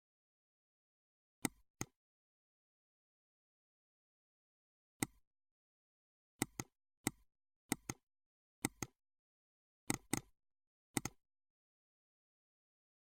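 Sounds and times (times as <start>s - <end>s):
computer mouse clicks: 6.4s - 8.0s, 8.6s - 9.0s, 9.9s - 10.3s, 11.0s - 11.2s.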